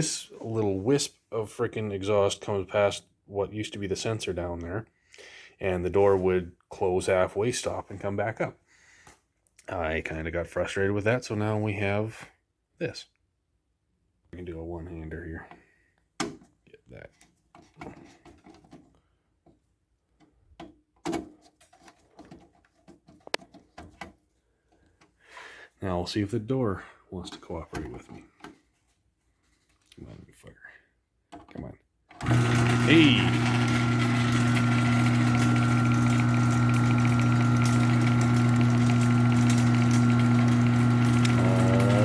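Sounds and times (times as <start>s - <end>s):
garage door opener motor humming: 32.2s - 42.0s.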